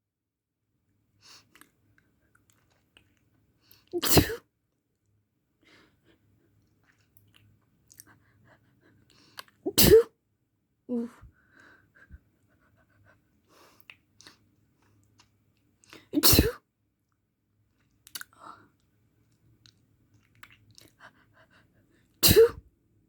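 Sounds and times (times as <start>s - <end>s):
person sneezing: 4.0s - 4.4s, 9.7s - 10.1s, 16.2s - 16.6s, 22.2s - 22.6s.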